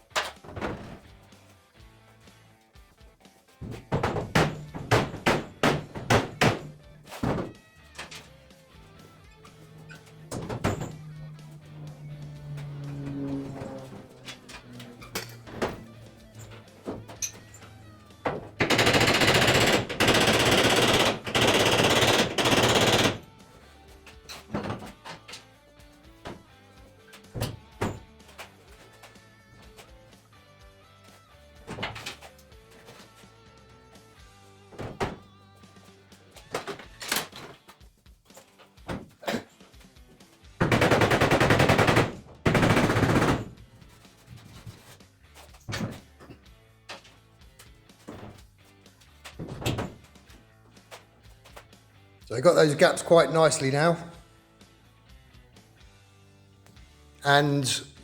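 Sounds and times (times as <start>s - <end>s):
pneumatic tool hammering sheet metal: 3.7s - 8.3s, 18.3s - 23.3s
metalworking rattle: 9.3s - 23.2s.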